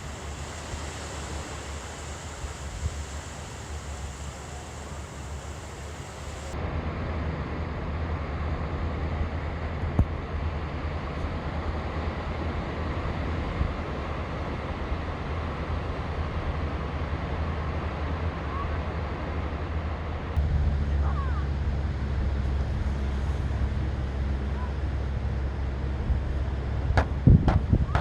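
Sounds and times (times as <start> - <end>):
surf washing on sandy beach: 0.0 - 6.6
wind rumbling on microphone: 0.0 - 6.6, 9.6 - 28.0.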